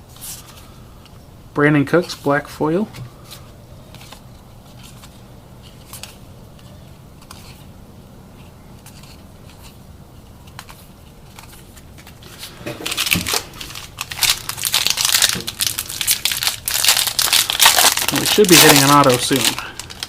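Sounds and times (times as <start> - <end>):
trading cards being handled: 1.9 - 7.7, 8.3 - 20.0
card pack wrapper crinkling: 3.9 - 7.7, 8.8 - 20.0.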